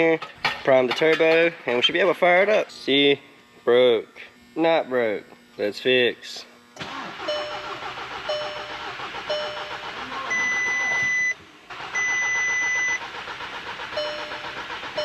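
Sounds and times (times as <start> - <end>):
car engine cranking: 6.8 - 15.0
high beeps: 9.3 - 11.4.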